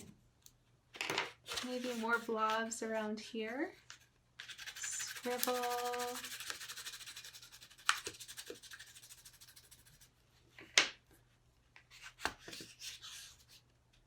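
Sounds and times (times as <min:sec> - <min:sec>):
crayon scribbling on paper plate: 0:04.5 - 0:10.1.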